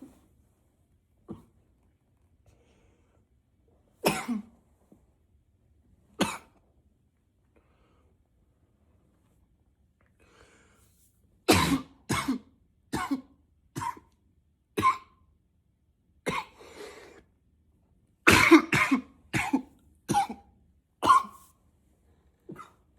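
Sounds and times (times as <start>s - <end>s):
man coughing hard: 4.0s - 4.5s, 11.5s - 14.0s, 14.8s - 15.1s, 16.3s - 16.6s, 18.3s - 20.4s, 21.0s - 21.4s, 22.5s - 22.8s.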